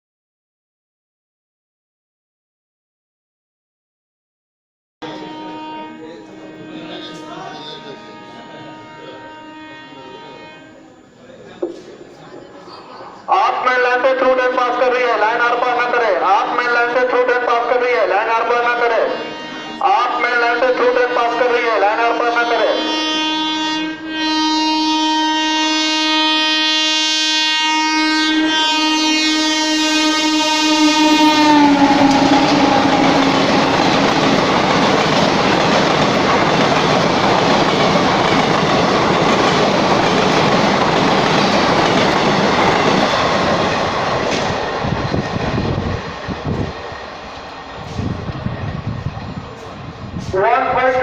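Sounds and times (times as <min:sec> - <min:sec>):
locomotive horn: 0:05.0 - 0:11.2, 0:14.6 - 0:35.6
train coaches rushing past: 0:29.8 - 0:51.0.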